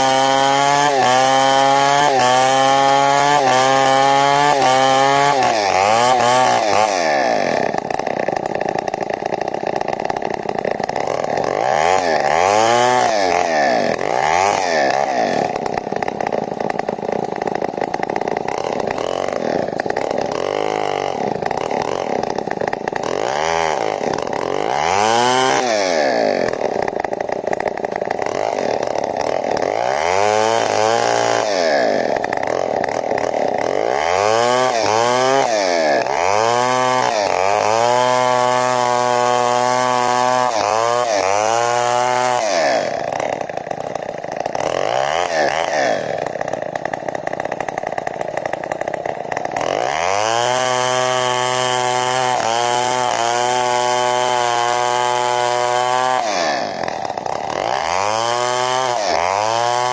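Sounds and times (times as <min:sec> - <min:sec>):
chainsaw cutting a log: 0:00.0 - 0:59.9.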